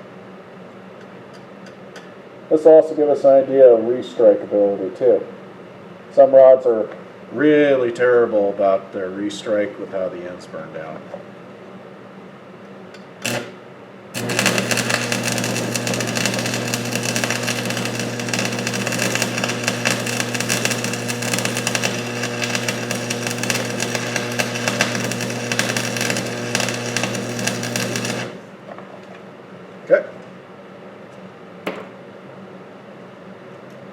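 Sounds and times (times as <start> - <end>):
welder low hum: 13.2 - 13.6, 14.2 - 28.6
welding arc crackling and sizzling: 13.2 - 13.6, 14.2 - 28.6.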